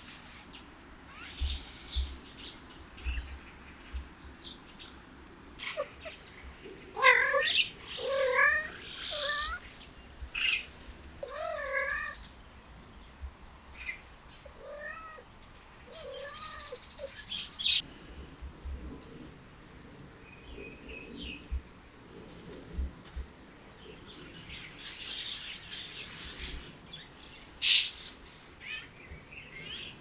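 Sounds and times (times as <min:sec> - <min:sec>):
cats meowing: 0:05.6 - 0:06.2, 0:06.9 - 0:09.8, 0:11.2 - 0:12.2, 0:14.5 - 0:15.3, 0:15.9 - 0:17.2.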